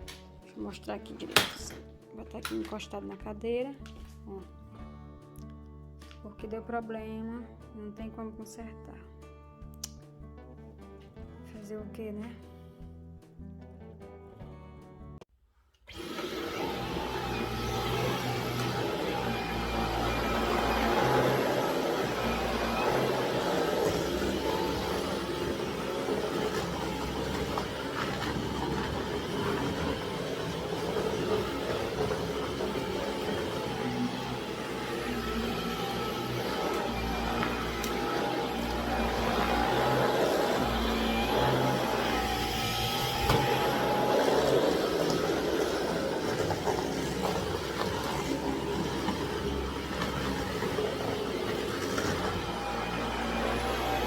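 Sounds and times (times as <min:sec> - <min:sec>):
cordless vacuum running: 0:15.9 - 0:54.0.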